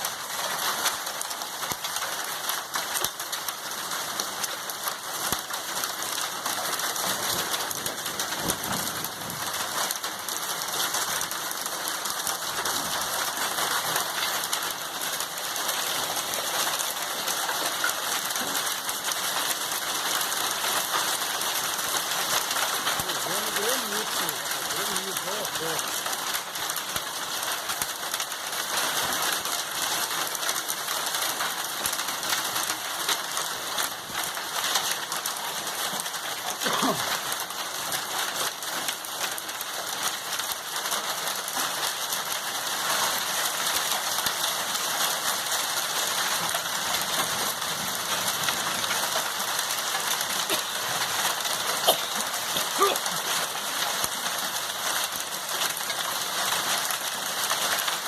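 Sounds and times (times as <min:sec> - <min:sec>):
heavy rain pouring: 0:00.0 - 0:58.0.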